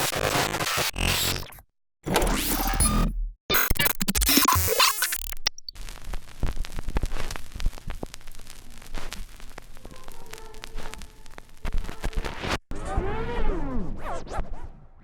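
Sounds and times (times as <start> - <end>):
glitchy electronic clicking noise: 0.0 - 5.8
crackling static: 2.4 - 12.8.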